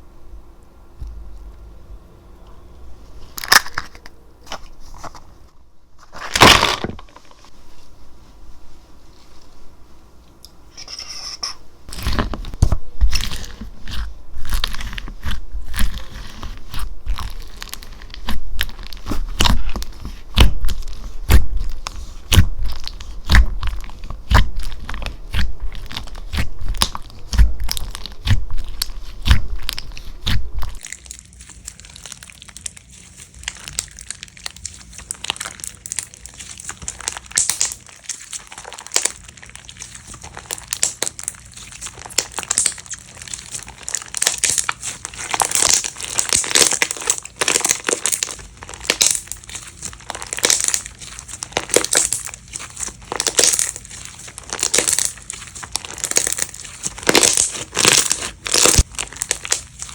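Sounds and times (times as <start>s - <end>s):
slime crunchy pops and clicks: 16.7s - 30.9s.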